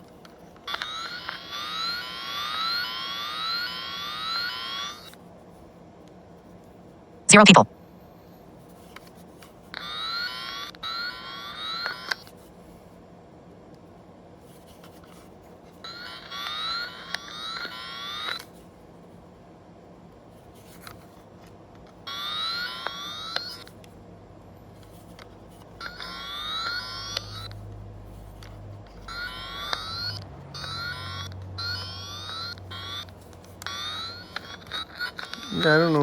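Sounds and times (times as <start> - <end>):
circuit tester warbling beeps: 7.3 - 7.6, 35.4 - 36.0.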